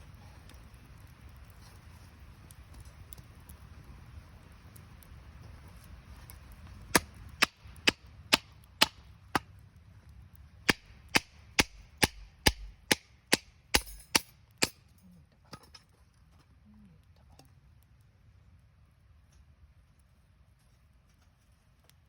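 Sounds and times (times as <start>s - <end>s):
axe chopping firewood: 6.8s - 9.6s, 10.7s - 14.8s.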